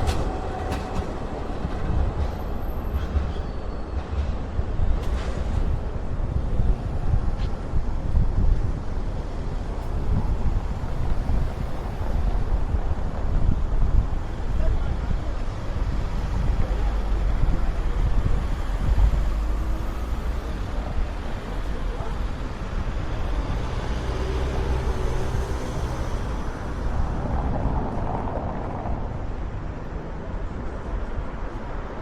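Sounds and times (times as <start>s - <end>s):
outdoor background noise: 0.0s - 32.0s
wind rumbling on microphone: 0.0s - 32.0s.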